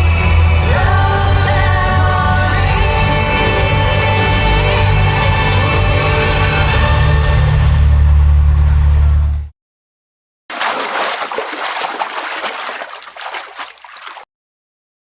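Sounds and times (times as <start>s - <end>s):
rushing splashing water: 10.5s - 14.3s.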